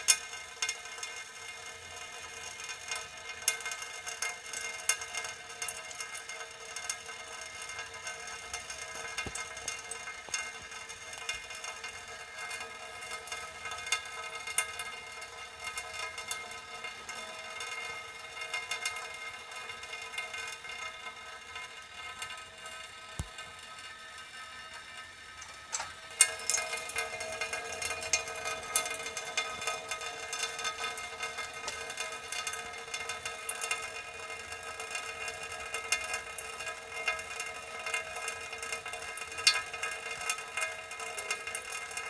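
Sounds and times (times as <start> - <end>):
water drops ticking on metal: 0.0 - 42.0.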